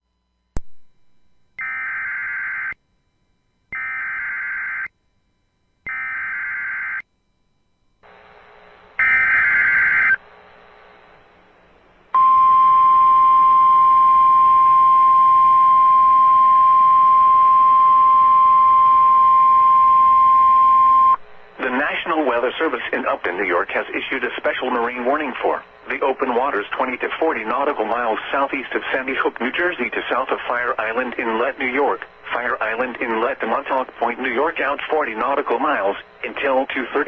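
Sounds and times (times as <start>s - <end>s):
steady warning alarm tone: 1.6s - 2.8s, 3.6s - 4.9s, 5.8s - 7.0s, 9.0s - 10.2s, 12.2s - 21.2s
warbling data tones: 9.0s - 10.2s.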